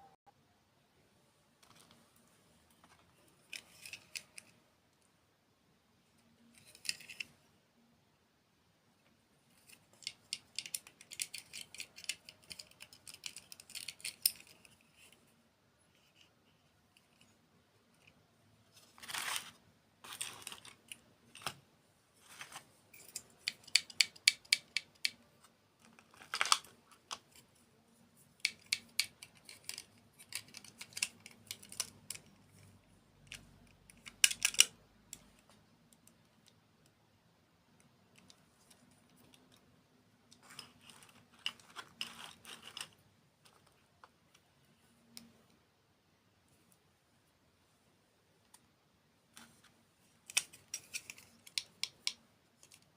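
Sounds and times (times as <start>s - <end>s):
small hard objects clicking: 23.0s - 25.2s, 50.3s - 52.9s.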